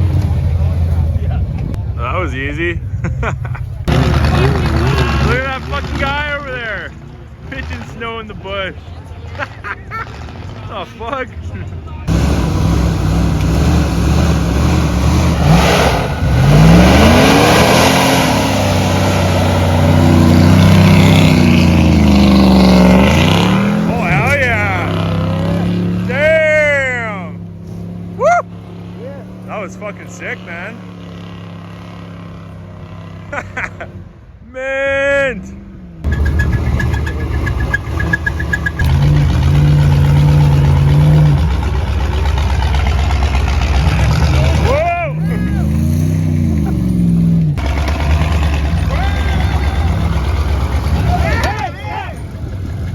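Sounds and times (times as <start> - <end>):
vehicle engine revving hard: 3.9 - 6.2, 12.1 - 26.8, 36.0 - 51.5
vehicle engine running: 36.0 - 52.9.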